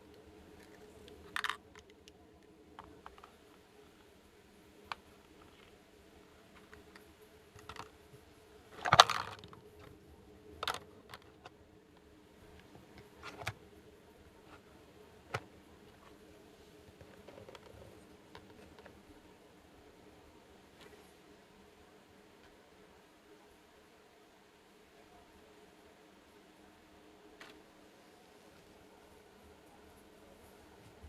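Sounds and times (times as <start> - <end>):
plastic toy pieces clattering: 1.2 - 2.0, 8.8 - 9.6.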